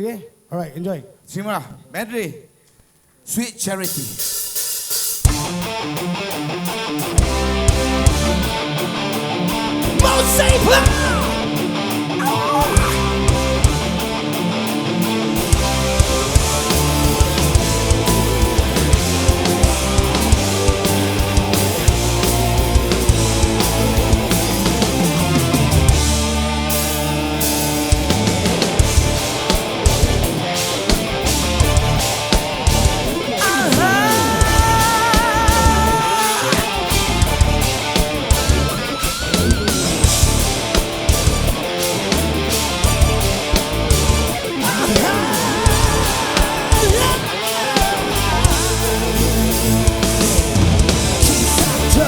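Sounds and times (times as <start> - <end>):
drum kit: 3.8 - 52.0
electric guitars: 5.2 - 52.0
wavering lead guitar note: 33.4 - 52.0.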